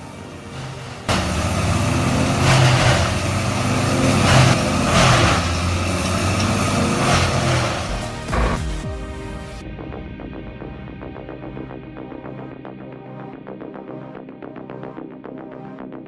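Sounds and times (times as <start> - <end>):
wood chipper engine drone: 0.0 - 9.1
wood chipper grinding: 0.4 - 8.9.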